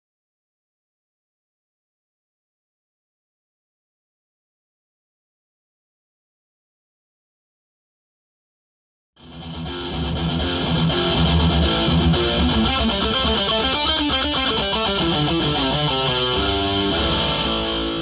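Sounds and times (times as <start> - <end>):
electric guitar music: 9.2 - 18.0.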